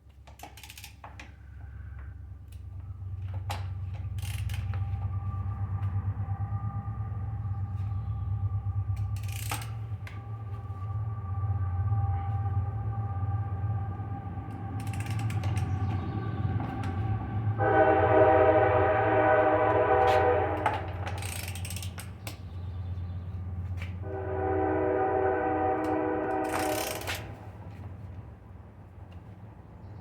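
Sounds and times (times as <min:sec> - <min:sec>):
ratchet wrench clicking: 0:00.2 - 0:01.4, 0:03.3 - 0:04.8, 0:09.0 - 0:10.2, 0:14.8 - 0:15.7, 0:20.6 - 0:22.4, 0:26.4 - 0:27.4
low hum: 0:01.4 - 0:29.2
long steady tones: 0:01.8 - 0:28.3.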